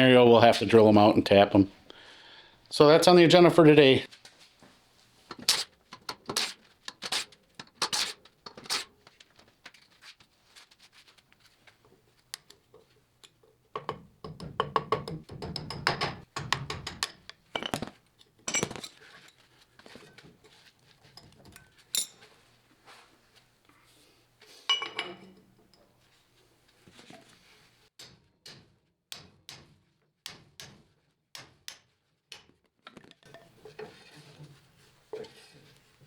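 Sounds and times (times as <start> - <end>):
metal tools clinking on metal: 18.5 - 19.3, 21.1 - 22.3.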